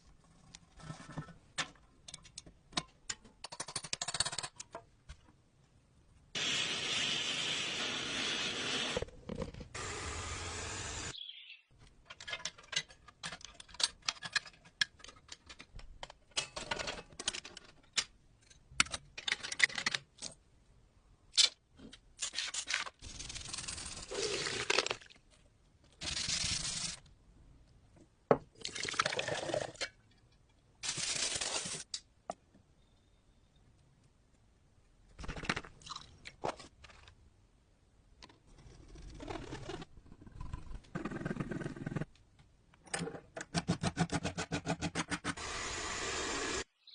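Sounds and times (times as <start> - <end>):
clicks and scrapes of parts: 11.8 - 20.4.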